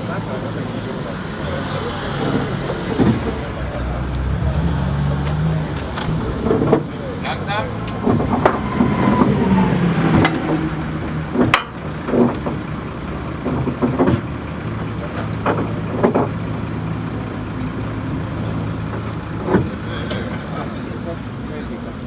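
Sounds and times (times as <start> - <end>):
engine idling hum: 0.0 - 22.0
sharp clicks and knocks: 5.2 - 9.4, 10.1 - 12.7, 13.4 - 14.4, 15.0 - 16.5.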